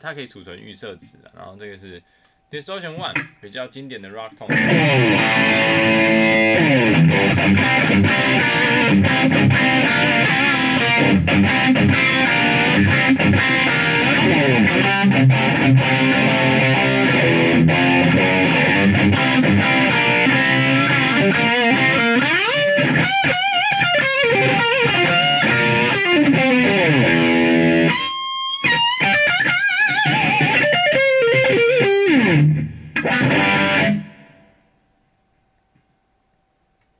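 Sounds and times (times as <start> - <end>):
distorted electric guitar: 4.5 - 34.6.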